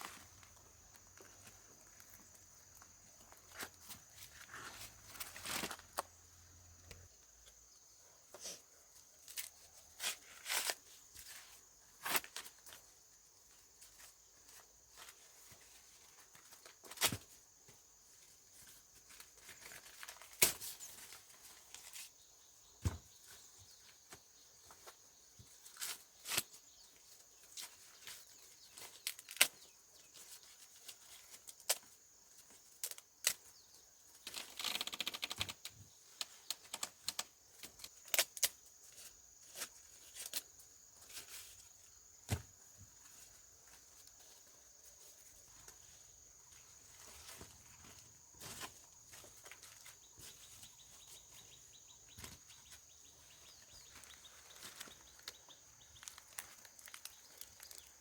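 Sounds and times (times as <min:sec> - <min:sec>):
dry corn leaves rustling: 0:00.0 - 0:06.1, 0:09.2 - 0:17.4, 0:18.1 - 0:35.6, 0:36.2 - 0:42.3, 0:42.9 - 0:58.0
corn ears snapping: 0:19.3 - 0:21.1, 0:28.7 - 0:29.8, 0:32.7 - 0:33.5, 0:34.2 - 0:38.6, 0:53.8 - 0:58.0.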